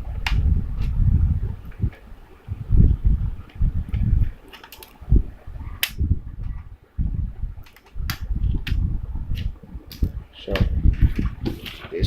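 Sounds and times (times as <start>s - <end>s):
sharp plastic clicks: 5.8s - 6.0s.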